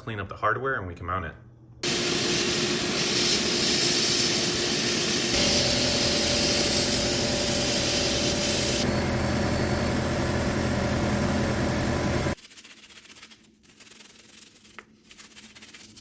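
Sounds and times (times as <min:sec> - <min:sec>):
electric power tool running: 0:01.8 - 0:12.4.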